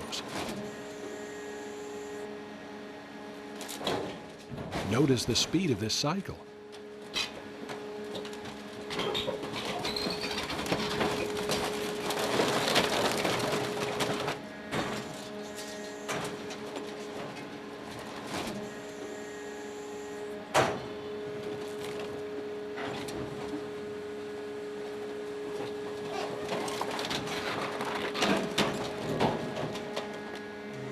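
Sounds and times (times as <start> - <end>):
motor and hydraulic pump hum: 0.0 - 30.9
scrap metal grinding and crunching: 7.4 - 18.5, 26.0 - 30.3.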